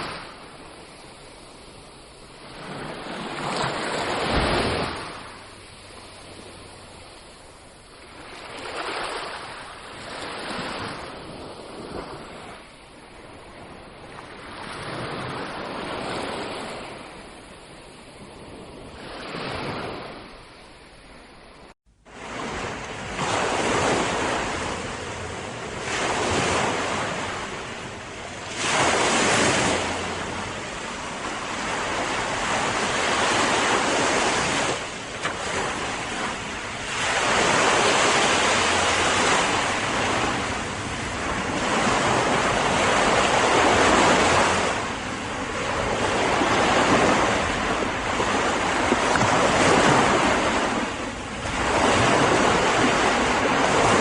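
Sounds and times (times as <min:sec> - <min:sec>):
waves breaking on shore: 0:00.0 - 0:54.0.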